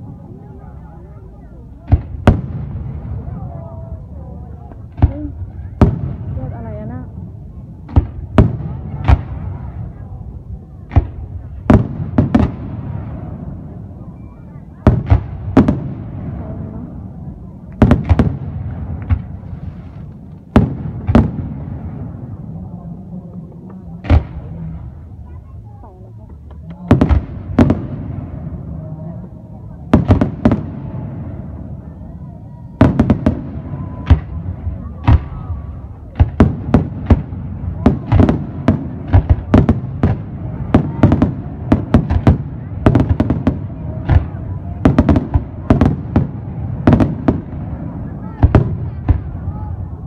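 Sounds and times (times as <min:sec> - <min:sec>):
continuous rumble: 0:00.0 - 0:50.0
fireworks bursting with bangs: 0:01.7 - 0:03.8, 0:04.4 - 0:50.0
low rumble: 0:18.4 - 0:41.7.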